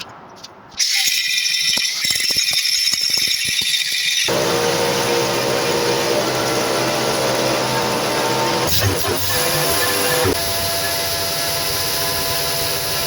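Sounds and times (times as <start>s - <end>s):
welder running with low hum: 4.3s - 13.0s.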